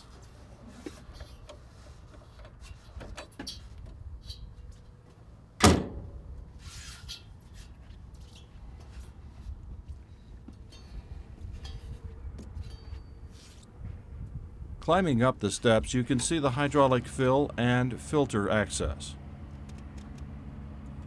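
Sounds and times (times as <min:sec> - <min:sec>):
latch clicks and knocks: 0:05.6 - 0:06.0
metal door banging shut: 0:05.6 - 0:06.1.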